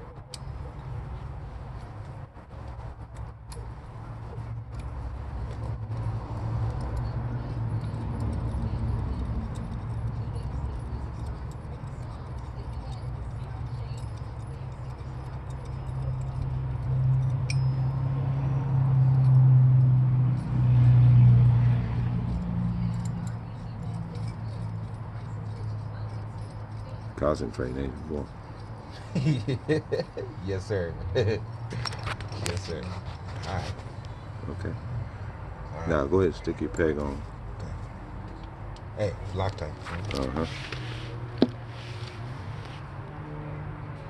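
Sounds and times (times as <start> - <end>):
metal tools clinking: 4.4 - 18.3, 22.3 - 30.2.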